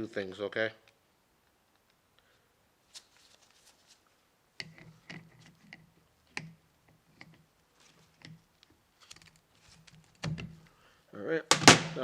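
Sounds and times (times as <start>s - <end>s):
sharp knocks: 11.5s - 12.0s.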